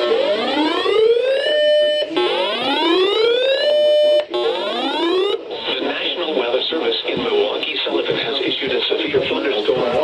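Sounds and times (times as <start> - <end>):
electronic whoop siren: 0.0 - 5.4.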